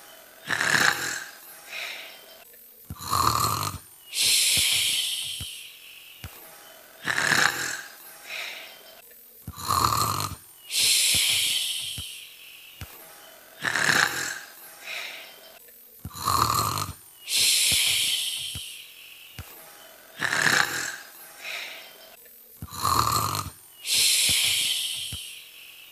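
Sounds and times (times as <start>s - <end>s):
airy exhale hiss: 0.0s - 8.9s, 9.6s - 25.9s
person imitating snoring: 0.3s - 2.2s, 2.9s - 5.8s, 6.9s - 8.9s, 9.5s - 12.3s, 13.5s - 15.4s, 16.0s - 18.8s, 20.1s - 21.9s, 22.6s - 25.5s.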